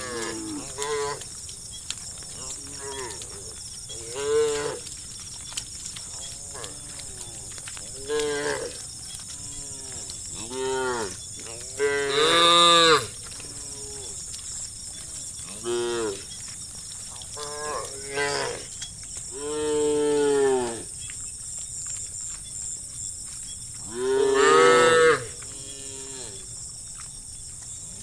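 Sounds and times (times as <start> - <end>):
cattle mooing: 2.3 - 4.9, 6.2 - 14.1, 23.9 - 26.4.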